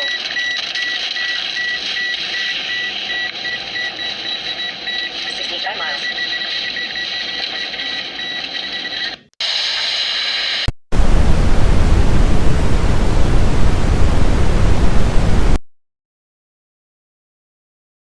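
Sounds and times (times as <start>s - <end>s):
white-noise static: 9.5s - 15.6s
steady hiss: 10.4s - 15.6s
faint high whine: 10.7s - 15.6s.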